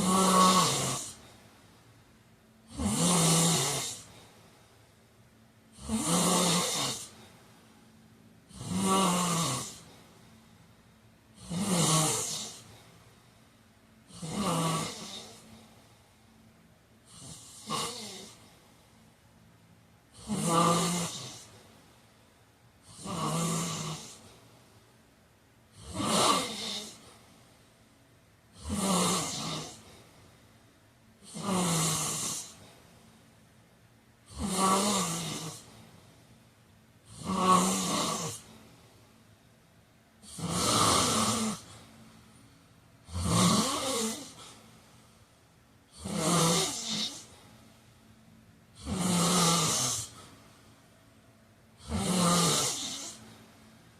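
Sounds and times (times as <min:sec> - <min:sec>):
man snoring: 0:00.0 - 0:01.2, 0:02.7 - 0:04.2, 0:05.7 - 0:07.2, 0:08.5 - 0:09.9, 0:11.4 - 0:12.7, 0:14.0 - 0:15.5, 0:17.1 - 0:18.4, 0:20.1 - 0:21.5, 0:22.8 - 0:24.3, 0:25.7 - 0:27.1, 0:28.5 - 0:29.9, 0:31.2 - 0:32.7, 0:34.3 - 0:35.8, 0:37.0 - 0:38.5, 0:40.2 - 0:41.8, 0:43.0 - 0:44.6, 0:45.9 - 0:47.3, 0:48.8 - 0:50.2, 0:51.8 - 0:53.4.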